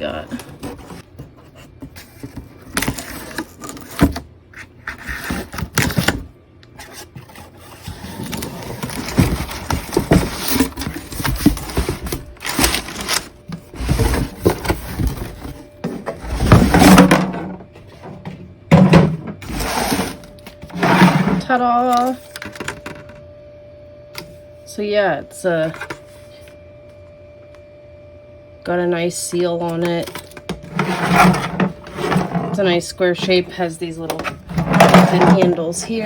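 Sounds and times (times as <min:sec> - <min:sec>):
cardboard and plastic handling: 0:00.0 - 0:23.1, 0:29.7 - 0:36.0
cardboard box being opened: 0:06.8 - 0:17.0.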